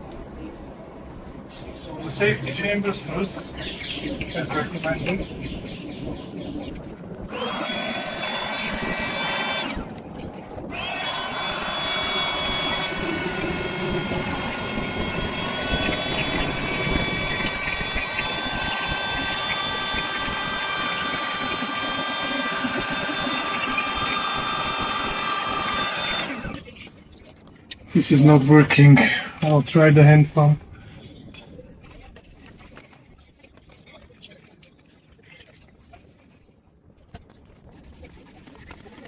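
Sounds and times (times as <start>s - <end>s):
electric air pump whine: 7.3s - 10.0s, 10.6s - 26.7s.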